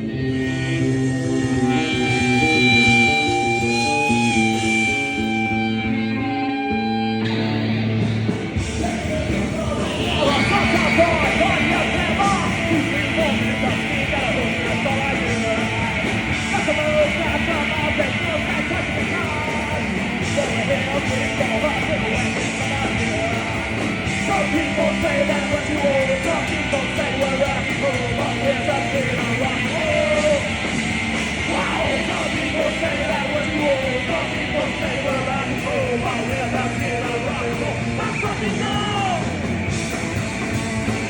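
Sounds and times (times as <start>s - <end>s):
live rock band playing: 0.0s - 41.0s
shouted vocals: 8.7s - 39.5s.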